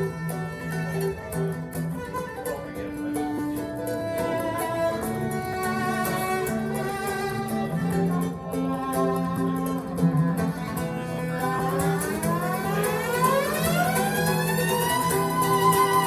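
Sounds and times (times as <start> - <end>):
bowed strings music on loudspeakers: 0.0 - 16.0.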